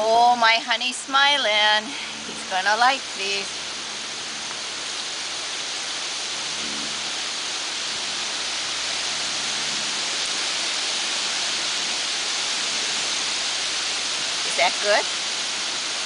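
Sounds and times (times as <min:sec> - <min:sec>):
wind rustling through leaves: 0:00.0 - 0:16.0.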